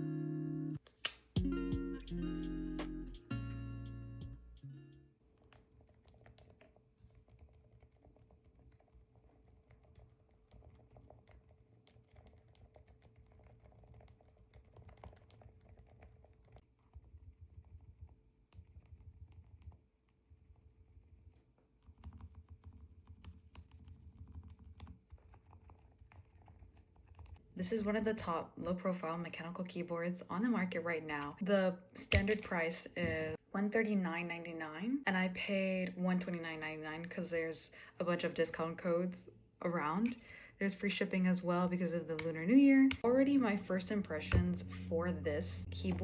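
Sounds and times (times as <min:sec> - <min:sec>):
quiet keyboard typing clicks: 0:05.4 - 0:19.8, 0:21.8 - 0:27.4.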